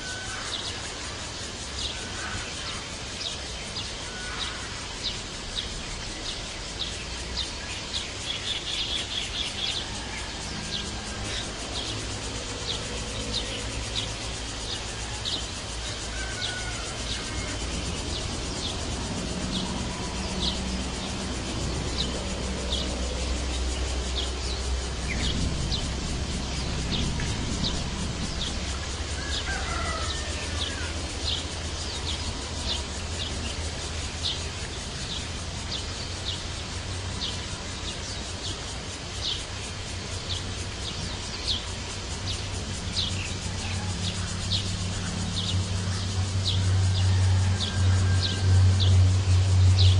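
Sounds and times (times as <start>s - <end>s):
low rumble: 17.7s - 29.2s.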